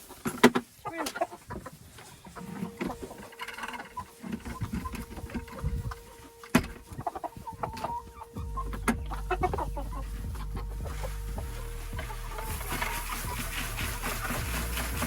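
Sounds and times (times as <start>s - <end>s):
chickens clucking: 0.0s - 15.0s
steady low hum: 8.4s - 15.0s.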